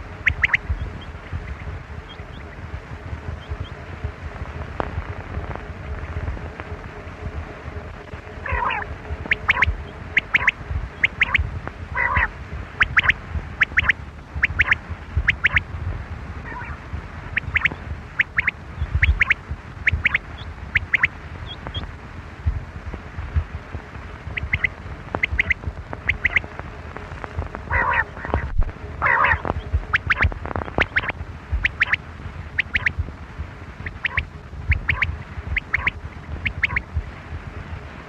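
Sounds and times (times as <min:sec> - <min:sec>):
low rumble: 0:00.0 - 0:38.0
quail calling: 0:00.2 - 0:01.2, 0:08.4 - 0:11.4, 0:12.0 - 0:15.6, 0:16.5 - 0:16.8, 0:17.4 - 0:21.9, 0:24.3 - 0:26.5, 0:27.7 - 0:32.0, 0:32.6 - 0:33.0, 0:33.9 - 0:36.8.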